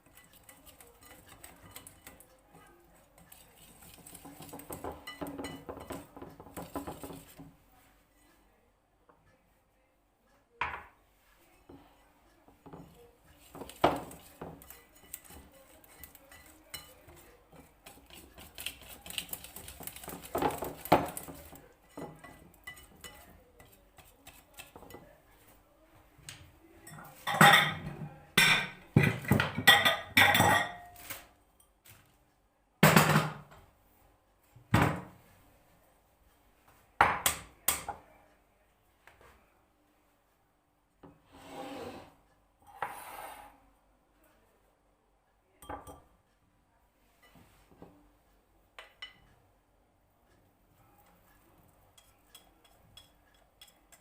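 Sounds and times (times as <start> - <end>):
cutlery and dishes clinking: 0.0 - 7.5, 12.6 - 25.2, 26.8 - 32.0, 48.8 - 49.3, 51.0 - 54.0.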